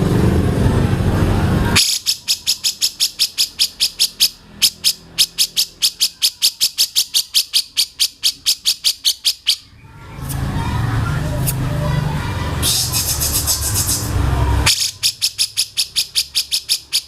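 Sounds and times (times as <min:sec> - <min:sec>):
loud low engine-like sound: 0:00.0 - 0:17.0.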